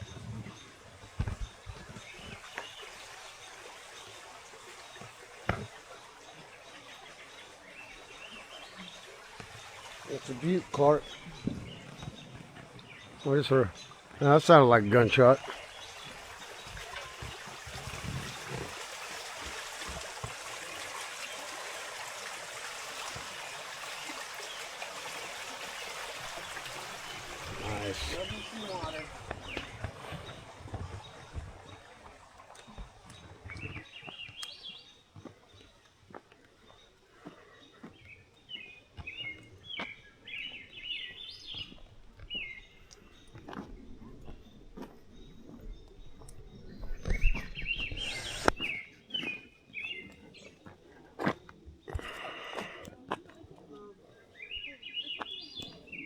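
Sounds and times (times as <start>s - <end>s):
songbird chirping: 0.0s - 22.2s, 23.0s - 56.0s
stream water flowing: 0.0s - 53.6s
low thuds: 11.0s - 14.2s.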